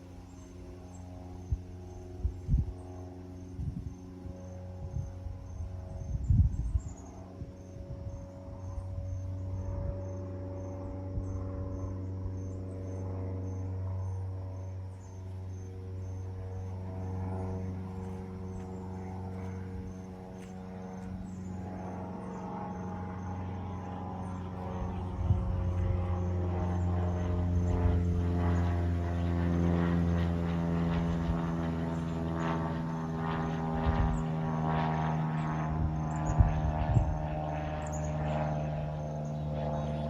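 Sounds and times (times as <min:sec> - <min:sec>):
propeller plane engine droning: 0:00.0 - 0:40.0.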